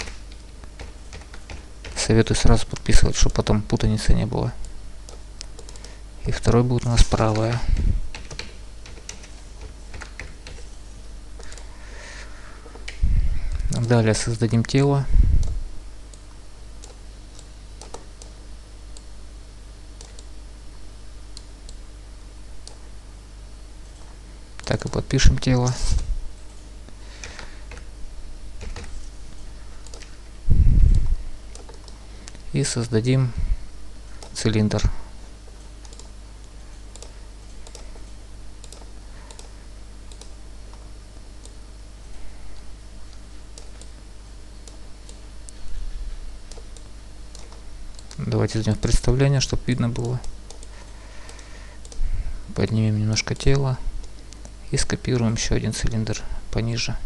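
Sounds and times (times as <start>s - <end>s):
computer input clicks: 0.0s - 2.1s, 4.6s - 6.0s, 7.2s - 10.7s, 15.4s - 19.1s, 20.0s - 20.3s, 28.6s - 28.9s, 29.8s - 30.1s, 30.9s - 32.4s, 35.6s - 41.6s, 46.5s - 49.0s, 49.8s - 52.0s
low steady hum: 0.0s - 57.0s
mouse and keyboard clicks: 31.5s - 32.0s.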